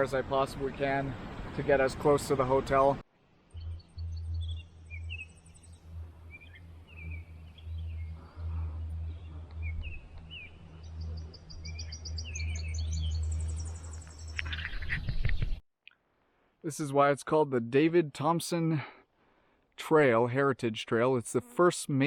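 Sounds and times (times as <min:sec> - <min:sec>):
small birds chirping: 0:00.7 - 0:15.6.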